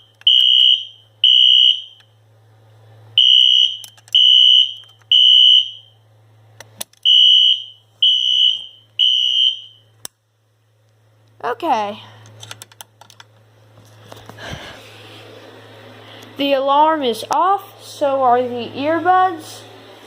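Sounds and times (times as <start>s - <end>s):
fire alarm horn beeping: 0.0s - 2.1s, 3.2s - 6.0s, 7.0s - 10.0s.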